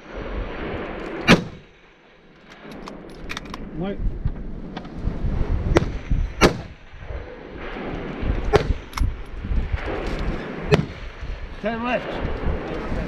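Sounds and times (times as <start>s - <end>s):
low wind rumble: 0.0s - 13.0s
rifle shots with echoes: 1.3s - 1.7s, 5.8s - 6.8s.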